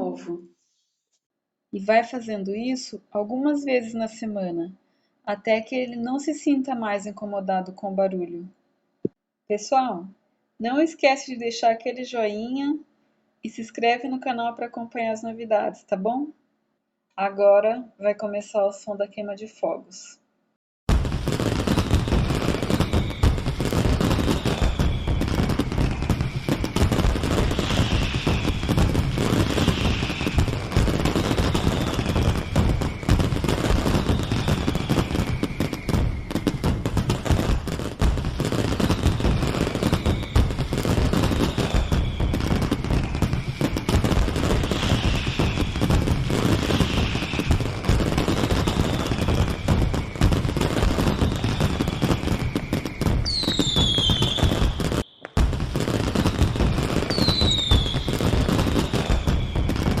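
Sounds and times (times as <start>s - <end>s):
fireworks bangs and crackling: 20.9s - 60.0s
fireworks falling whistles: 20.9s - 60.0s.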